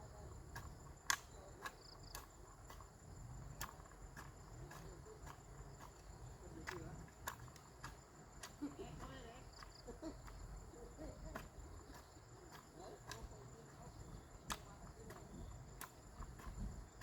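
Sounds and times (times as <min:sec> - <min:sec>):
light clicks and taps: 0:03.5 - 0:10.5.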